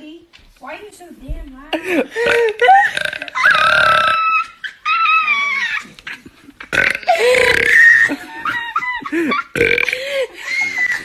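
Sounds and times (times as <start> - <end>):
person burping loudly: 2.1 - 4.3, 6.7 - 8.1, 9.5 - 10.0.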